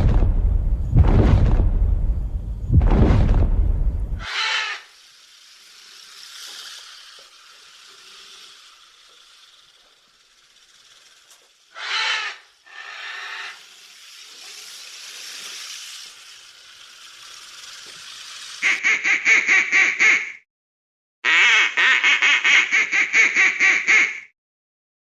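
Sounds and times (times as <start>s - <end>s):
animal hissing: 4.2s - 18.8s.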